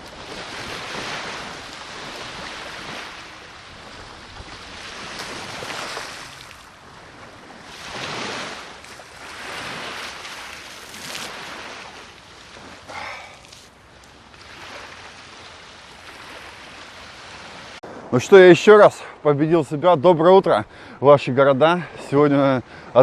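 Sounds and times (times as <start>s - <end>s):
wind buffeting microphone: 0.0s - 13.0s
sea waves washing onto shore: 0.0s - 19.8s.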